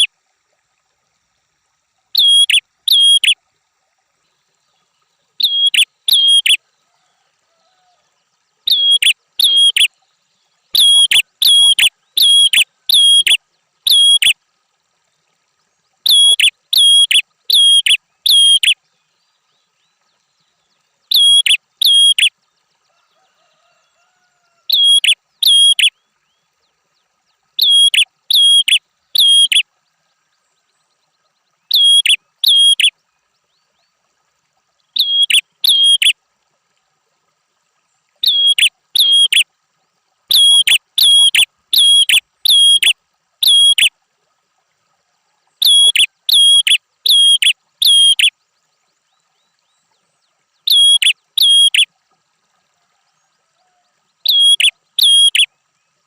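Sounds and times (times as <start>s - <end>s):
bird chirping: 2.2s - 3.4s, 5.4s - 6.6s, 8.7s - 9.9s, 10.7s - 14.4s, 16.0s - 18.8s, 21.1s - 22.3s, 24.7s - 26.0s, 27.6s - 29.6s, 31.7s - 32.9s, 35.0s - 36.1s, 38.2s - 39.4s, 40.3s - 43.9s, 45.6s - 48.3s, 50.6s - 51.9s, 54.2s - 55.5s.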